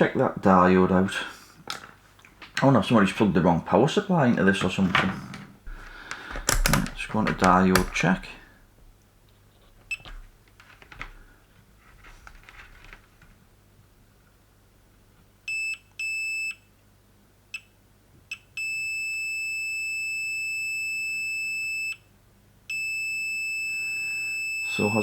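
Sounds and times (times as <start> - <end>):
probes rustling: 4.2 - 13.5.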